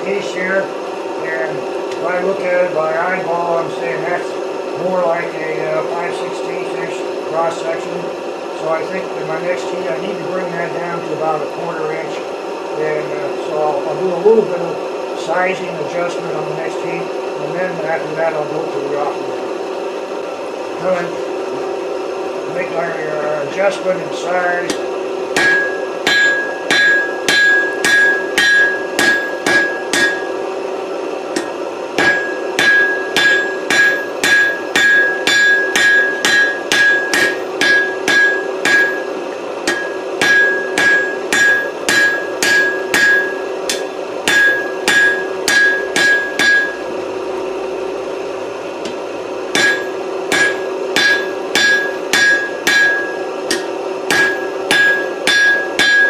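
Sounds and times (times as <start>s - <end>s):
steady hum: 0.0s - 56.0s
hammer ringing on anvil: 24.7s - 30.4s, 31.4s - 46.9s, 48.8s - 56.0s.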